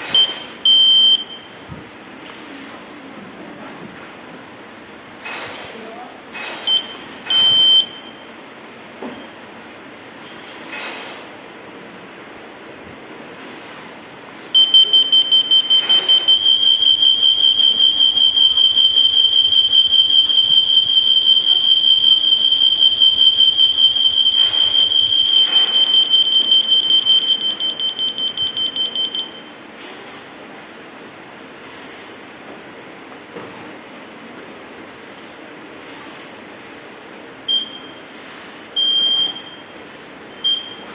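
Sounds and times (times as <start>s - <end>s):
smoke alarm pulsing tone: 0.1s - 1.5s, 14.6s - 29.5s, 37.5s - 38.0s, 38.8s - 39.7s, 40.4s - 40.8s.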